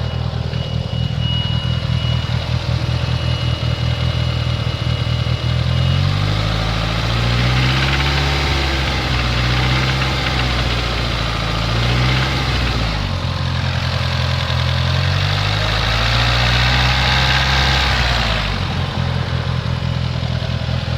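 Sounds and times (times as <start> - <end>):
car engine revving with rod knock: 5.8 - 12.9.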